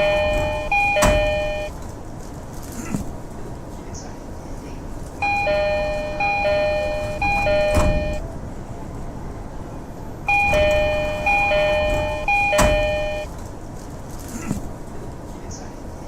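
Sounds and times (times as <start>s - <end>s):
two-note train door chime: 0.0s - 1.7s, 5.2s - 8.2s, 10.3s - 13.3s
sharp knock: 12.0s - 12.9s.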